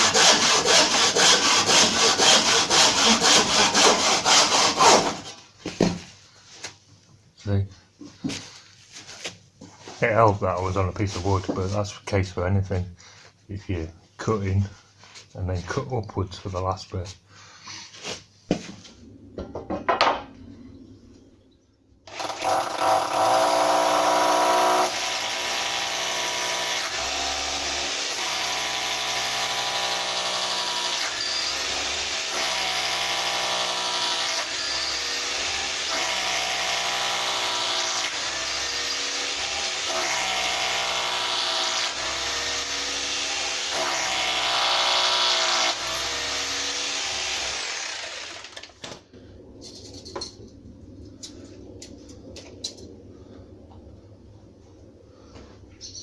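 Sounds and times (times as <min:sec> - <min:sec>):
electric drill running: 0:22.1 - 0:48.7.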